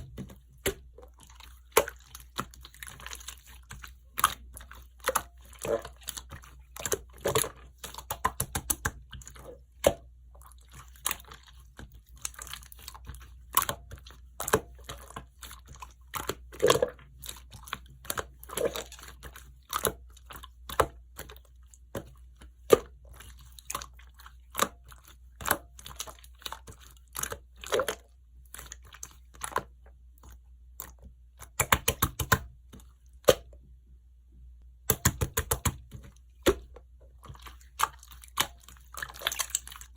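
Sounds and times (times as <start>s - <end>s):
slime squishing with sticky clicks: 0.0s - 33.8s, 34.6s - 39.9s.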